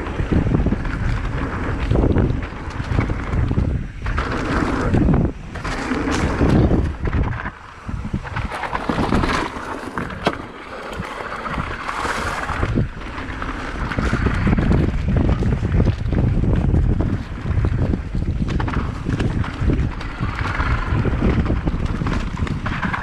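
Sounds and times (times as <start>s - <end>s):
bike tyres rolling on dirt: 0.0s - 23.0s
wind buffeting microphone: 0.0s - 23.0s
bike knocking on rocks: 5.6s - 14.6s.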